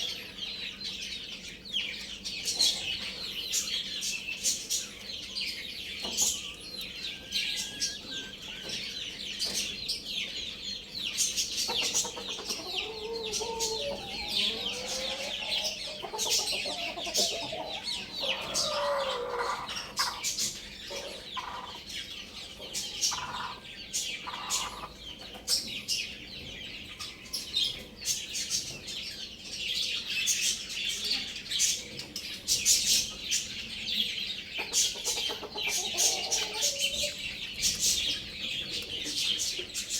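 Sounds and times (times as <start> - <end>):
chickens clucking: 0.0 - 39.9
high-pitched chirping: 6.0 - 9.6
rooster crowing: 12.5 - 20.0, 35.9 - 37.2.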